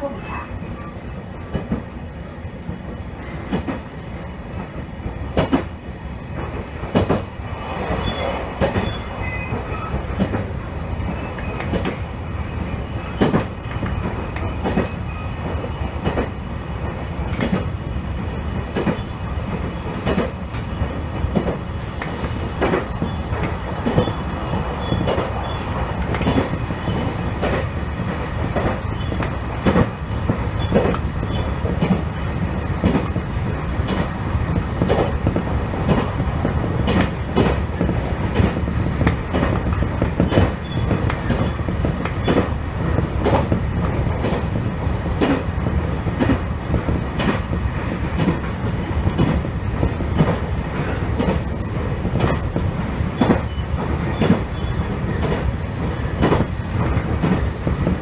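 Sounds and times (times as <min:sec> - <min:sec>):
train rumbling: 0:00.0 - 0:58.0
wheels clicking over rail joints: 0:18.6 - 0:58.0.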